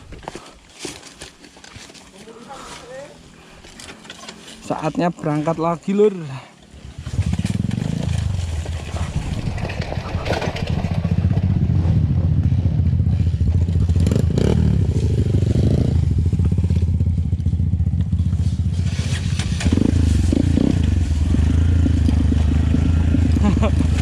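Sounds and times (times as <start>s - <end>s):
dirt bike engine revving: 6.7s - 24.0s
sharp knocks and clatter: 7.0s - 12.0s.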